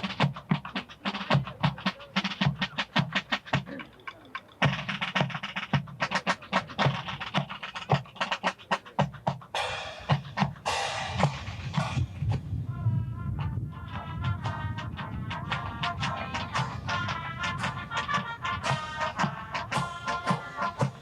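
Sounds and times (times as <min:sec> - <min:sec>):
bass drum beats: 0:04.6 - 0:12.7
cymbal crash: 0:09.6 - 0:12.2.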